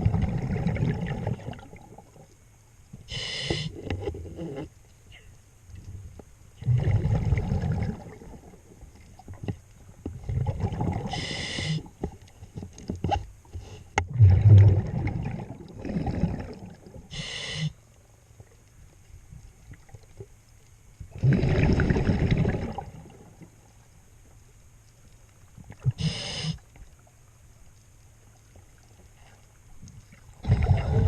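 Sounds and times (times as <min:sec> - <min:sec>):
gurgling exhaled bubbles: 0:00.0 - 0:02.3, 0:06.6 - 0:08.7, 0:10.1 - 0:11.9, 0:14.1 - 0:17.2, 0:21.1 - 0:23.4, 0:30.2 - 0:31.0
regulator inhalation hiss: 0:03.1 - 0:03.8, 0:11.1 - 0:11.9, 0:17.1 - 0:17.8, 0:26.0 - 0:26.6.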